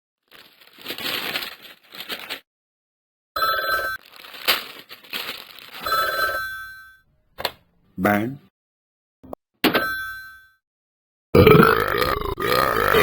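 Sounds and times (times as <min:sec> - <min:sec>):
ringing telephone bell tone: 0:03.4 - 0:04.0, 0:05.8 - 0:07.1, 0:09.7 - 0:10.6.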